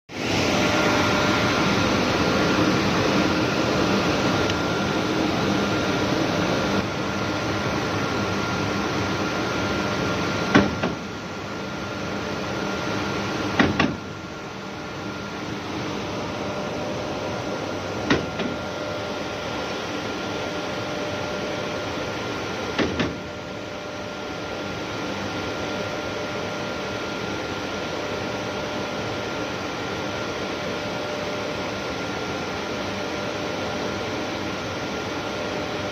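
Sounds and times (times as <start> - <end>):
machinery drone: 0.1 - 9.2
drawworks mechanical hum: 0.1 - 35.9
high motor whine: 0.1 - 35.9.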